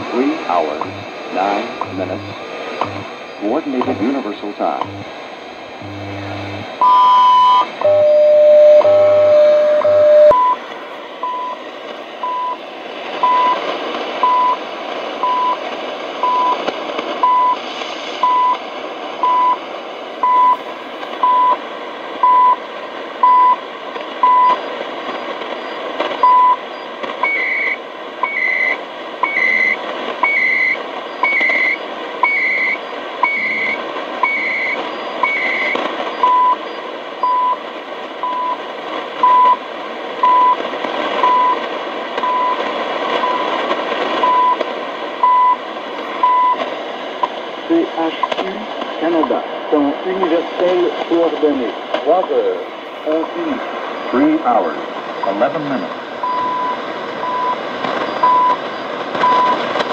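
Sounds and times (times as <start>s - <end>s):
data bursts: 0.0s - 5.1s, 5.8s - 10.6s, 25.2s - 37.6s, 54.0s - 59.7s
radio static: 0.0s - 59.9s
time signal beeps: 5.8s - 10.6s, 11.2s - 11.6s, 12.2s - 12.6s, 13.2s - 13.6s, 14.2s - 14.6s, 15.2s - 15.6s, 16.2s - 16.6s, 17.2s - 17.6s, 18.2s - 18.6s, 19.2s - 19.6s, 20.2s - 20.6s, 21.2s - 21.6s, 22.2s - 22.6s, 23.2s - 23.6s, 24.2s - 24.6s, 26.2s - 26.6s, 27.2s - 37.6s, 38.2s - 38.6s, 39.2s - 39.6s, 40.2s - 40.6s, 41.2s - 41.6s, 42.2s - 42.6s, 43.2s - 43.5s, 44.2s - 44.6s, 45.2s - 45.6s, 46.2s - 46.6s, 55.2s - 58.6s, 59.2s - 59.6s.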